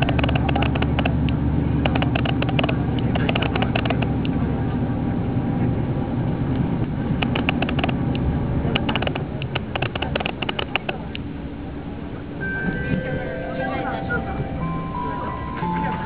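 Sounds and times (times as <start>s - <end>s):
diesel railcar engine hum: 0.0s - 16.0s
light clicking and rattling: 7.2s - 11.2s.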